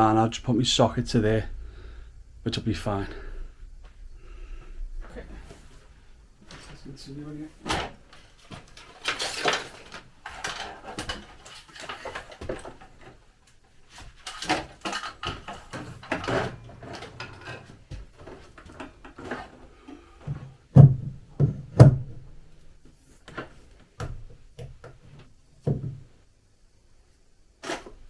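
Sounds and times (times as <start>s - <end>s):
cable rustling and clicks: 6.4s - 20.0s.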